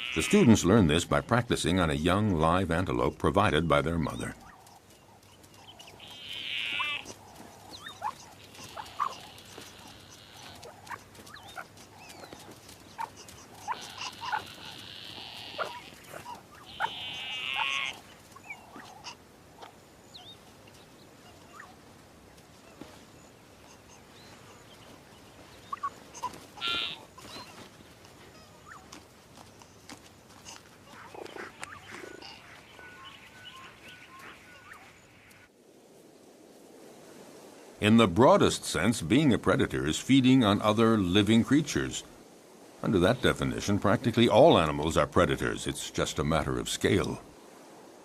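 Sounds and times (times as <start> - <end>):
young antelope bleating: 0.0 - 0.8, 5.6 - 19.2, 25.7 - 29.0, 30.4 - 35.5.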